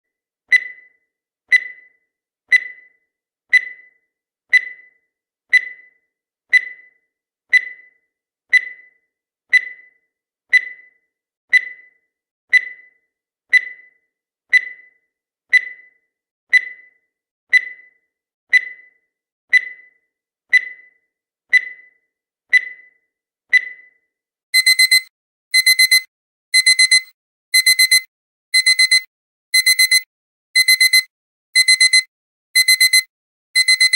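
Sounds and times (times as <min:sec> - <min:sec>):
timer ticking: 0:00.5 - 0:00.9, 0:01.5 - 0:01.9, 0:02.5 - 0:02.9, 0:24.6 - 0:33.9
alarm beeps: 0:24.6 - 0:33.9.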